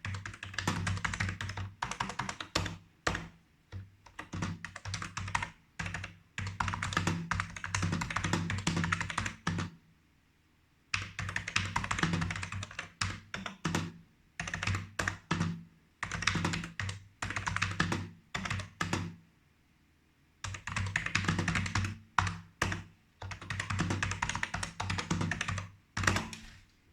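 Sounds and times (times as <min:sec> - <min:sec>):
keyboard typing: 0:00.0 - 0:09.7, 0:11.0 - 0:19.2, 0:20.4 - 0:26.6.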